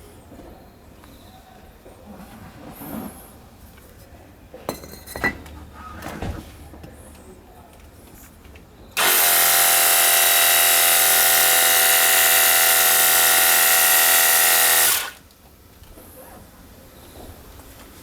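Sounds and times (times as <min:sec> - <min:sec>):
pressure washer running: 0:09.0 - 0:15.2.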